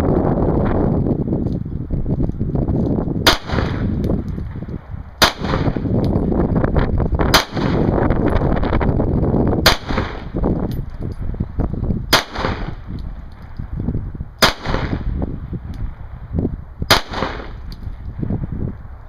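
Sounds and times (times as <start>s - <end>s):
wind buffeting microphone: 0.0s - 19.0s
pistol shots: 3.2s - 3.9s, 5.2s - 5.9s, 7.3s - 7.9s, 9.6s - 10.3s, 12.1s - 12.8s, 14.4s - 15.1s, 16.9s - 17.7s.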